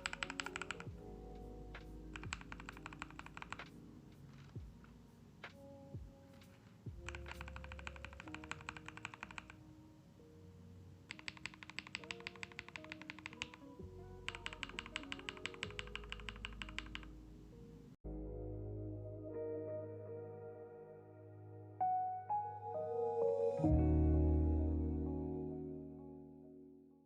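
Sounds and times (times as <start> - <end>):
mechanical keyboard typing: 0.0 - 1.0, 1.8 - 4.8, 6.4 - 9.6, 11.1 - 13.7, 14.3 - 17.1
lo-fi background music: 0.0 - 27.0.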